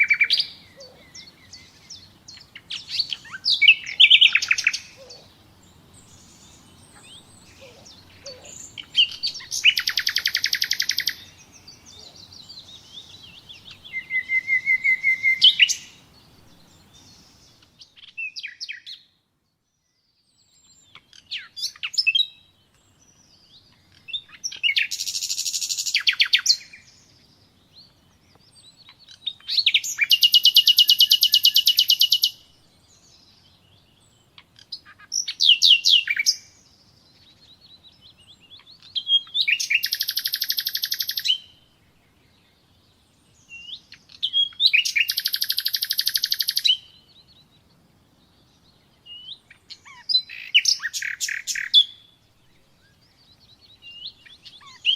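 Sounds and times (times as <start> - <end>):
nightingale singing: 0.0 - 54.9.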